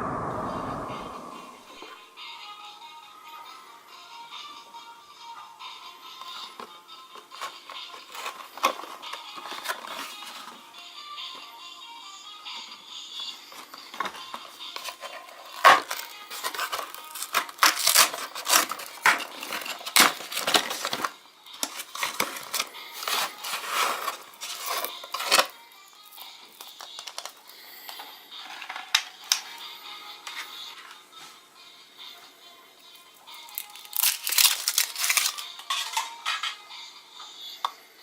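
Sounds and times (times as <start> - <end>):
quiet background music: 0.8 - 38.0
packaging crinkling and tearing: 14.8 - 25.6, 33.3 - 36.2.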